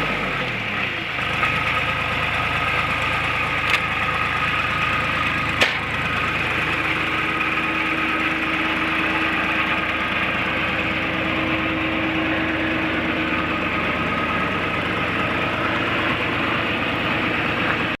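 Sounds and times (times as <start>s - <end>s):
diesel engine running: 0.0s - 18.0s
steady whine: 5.1s - 18.0s.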